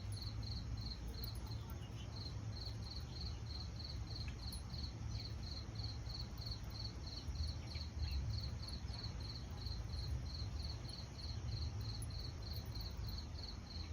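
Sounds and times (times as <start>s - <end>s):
cricket chirping: 0.0s - 13.9s.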